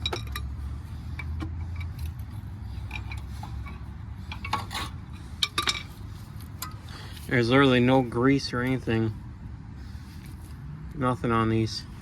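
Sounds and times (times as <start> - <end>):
metal brake parts clinking: 0.0 - 7.0.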